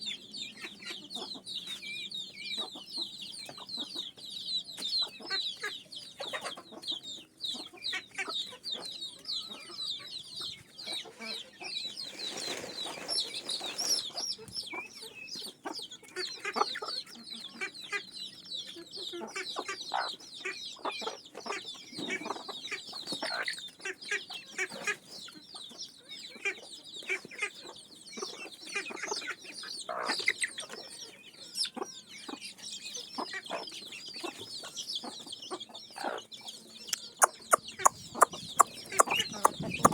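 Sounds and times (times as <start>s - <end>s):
chickens clucking: 0.0s - 39.9s
chicks cheeping: 0.0s - 39.9s
rustling: 12.0s - 14.1s.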